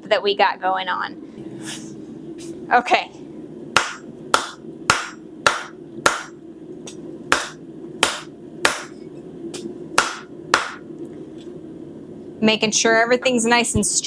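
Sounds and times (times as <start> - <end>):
low hum: 0.0 - 14.0
hammer striking metal on anvil: 3.8 - 6.4, 7.3 - 8.9, 10.0 - 10.8.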